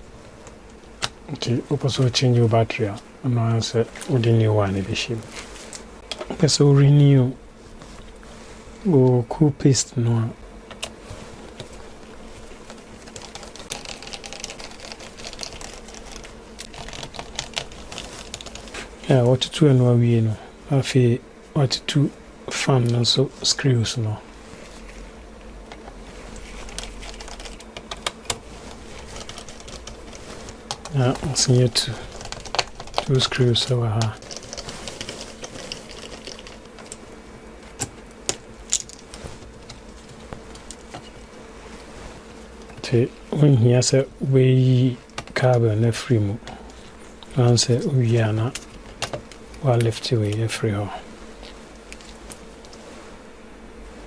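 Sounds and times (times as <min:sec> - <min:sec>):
faint steady hum: 0:00.0 - 0:54.0
small tools clicking on laptop: 0:12.6 - 0:18.7, 0:26.6 - 0:31.0.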